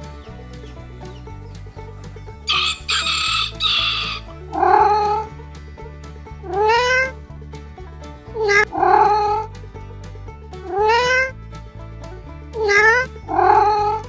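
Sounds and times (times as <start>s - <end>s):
background music: 0.0s - 14.0s
rooster crowing: 2.5s - 4.2s.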